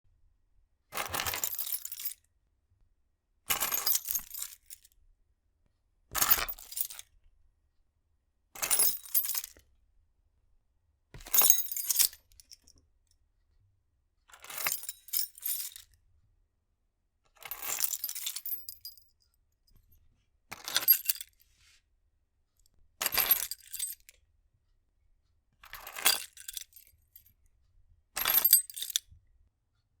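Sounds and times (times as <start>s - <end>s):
metal keys jingling: 11.3s - 12.2s, 17.5s - 19.0s, 23.1s - 24.0s, 28.2s - 29.0s.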